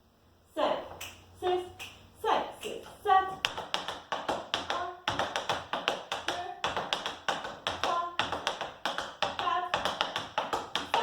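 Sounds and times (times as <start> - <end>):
tap shoes clicking on floor: 3.3 - 11.0.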